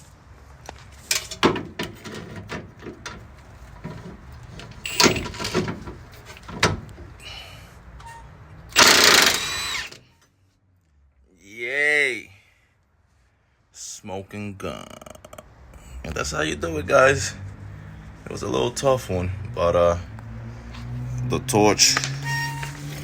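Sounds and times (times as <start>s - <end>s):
tools clanking on metal: 3.8s - 6.8s
loud burst: 8.8s - 9.9s.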